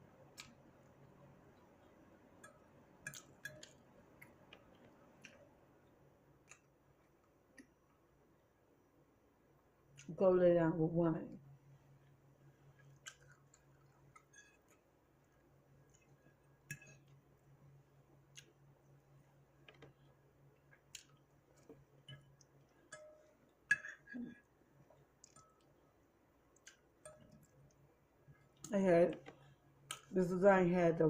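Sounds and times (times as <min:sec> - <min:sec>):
low steady hum: 0:00.0 - 0:31.0
person eating: 0:12.8 - 0:14.9.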